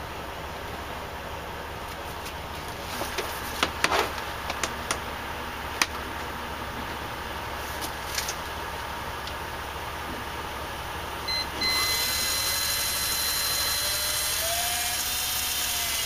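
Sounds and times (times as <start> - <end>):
steady low hum: 0.0 - 15.1.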